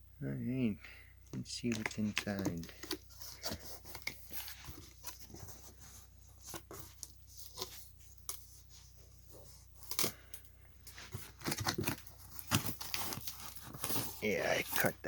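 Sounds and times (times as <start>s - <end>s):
cardboard box rustling and scraping: 2.3s - 10.1s, 10.9s - 15.0s.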